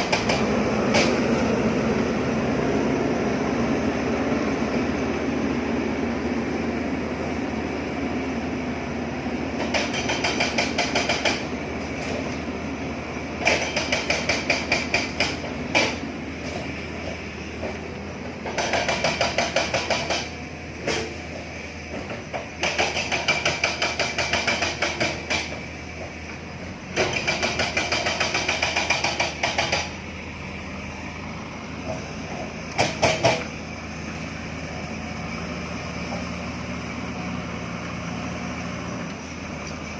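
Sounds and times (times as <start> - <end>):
diesel engine running: 0.0 - 39.9
rapid hammering blows: 9.6 - 11.5, 13.4 - 16.0, 18.4 - 20.4, 22.3 - 25.6, 27.0 - 30.0, 32.8 - 33.5.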